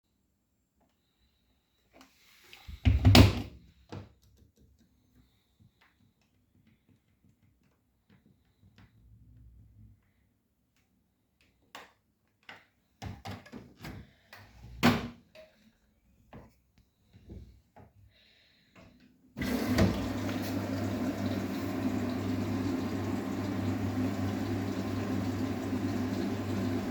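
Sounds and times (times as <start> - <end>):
washing machine being handled: 19.4 - 21.6
washing machine drawing water: 19.4 - 26.9.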